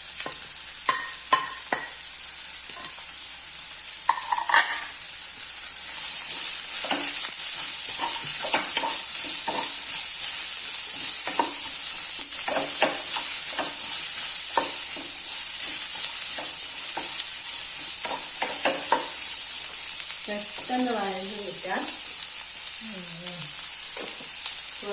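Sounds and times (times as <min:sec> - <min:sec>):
onions sizzling in oil: 0:00.0 - 0:24.9
spatula scraping pan: 0:05.9 - 0:19.9.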